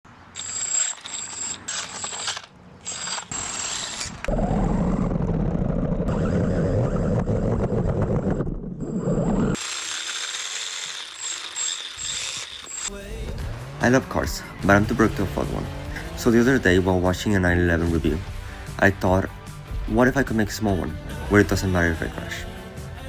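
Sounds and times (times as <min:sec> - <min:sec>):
rattling gear noise: 0:00.3 - 0:04.3, 0:09.4 - 0:13.8
rc car motor whining: 0:00.4 - 0:04.4, 0:09.3 - 0:13.0.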